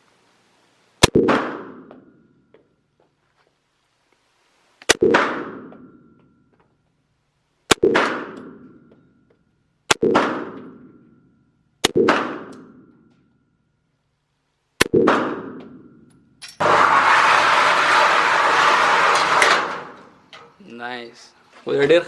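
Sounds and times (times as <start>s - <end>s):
pistol shots with echo: 1.0s - 1.9s, 4.9s - 6.0s, 7.7s - 8.8s, 9.9s - 11.0s, 11.8s - 12.9s, 14.8s - 15.9s.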